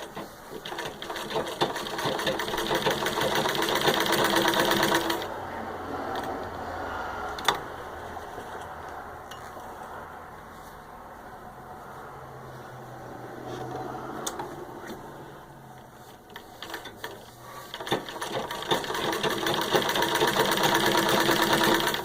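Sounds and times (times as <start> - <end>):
treadle sewing machine clatter: 0.0 - 5.3, 16.3 - 22.0.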